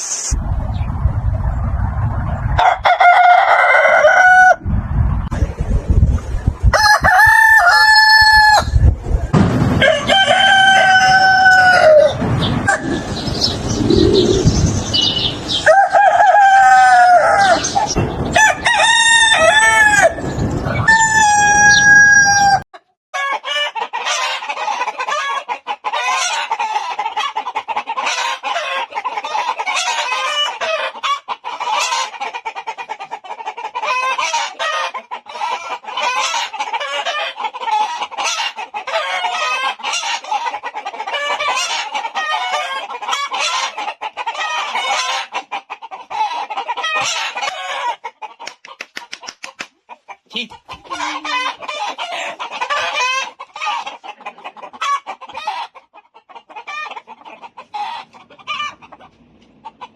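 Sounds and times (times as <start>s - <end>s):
chickens clucking: 0.0s - 59.9s
roosters crowing: 2.5s - 4.7s, 6.7s - 32.3s, 33.8s - 45.4s, 46.0s - 48.2s, 50.4s - 55.8s.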